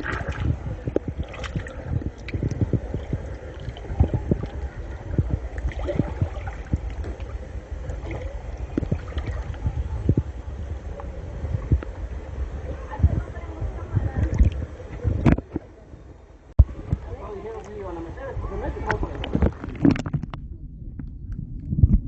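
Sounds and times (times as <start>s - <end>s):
water sloshing and splashing: 0.0s - 15.8s, 18.6s - 20.4s
low rumble: 0.0s - 22.0s.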